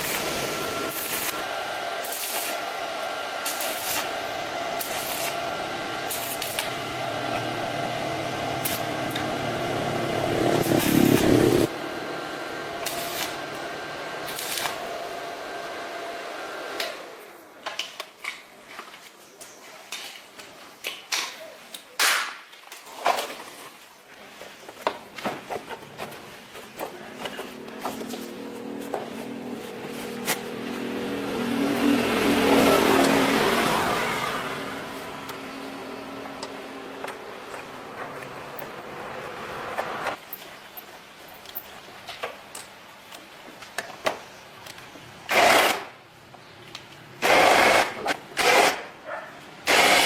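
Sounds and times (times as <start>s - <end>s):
power tool motor running: 45.3s - 45.9s, 49.7s - 50.0s.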